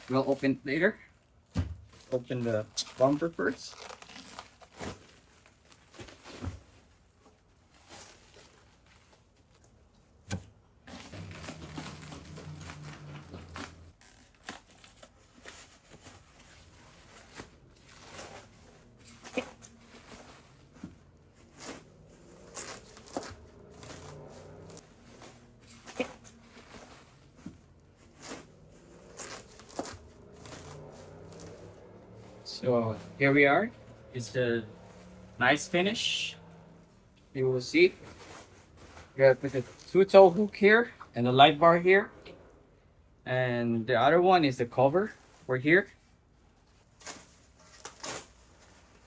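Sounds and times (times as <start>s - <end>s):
packaging crinkling and tearing: 1.1s - 7.0s, 10.9s - 31.8s, 46.9s - 49.0s.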